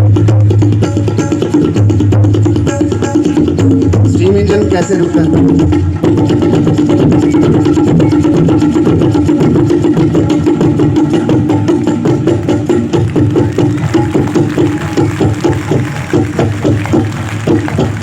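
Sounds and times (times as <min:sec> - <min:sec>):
tabla playing fast strokes: 0:00.0 - 0:18.0.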